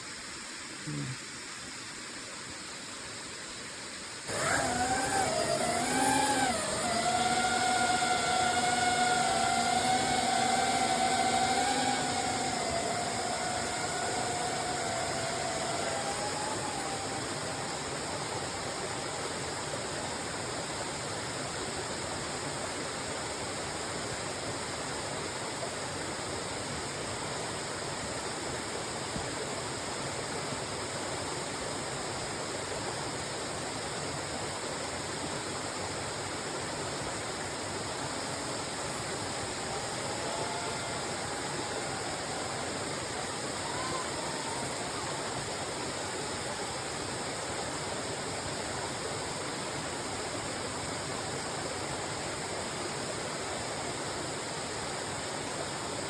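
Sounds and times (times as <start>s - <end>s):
drone propellers humming: 4.3s - 19.3s, 38.6s - 46.6s.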